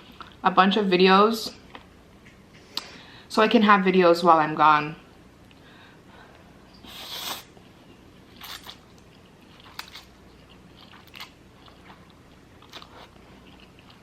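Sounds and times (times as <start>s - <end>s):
quiet chewing: 7.2s - 14.0s
crunching bite: 8.4s - 14.0s.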